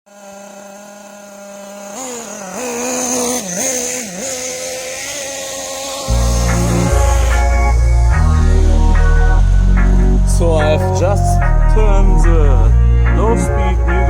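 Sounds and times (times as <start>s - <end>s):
small engine idling and revving: 0.1s - 14.0s
music with heavy bass: 6.1s - 14.0s.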